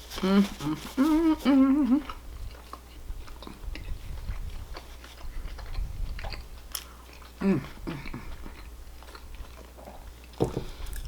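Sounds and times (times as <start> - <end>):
person chewing: 0.0 - 11.0
person humming: 0.1 - 2.2, 7.4 - 8.2.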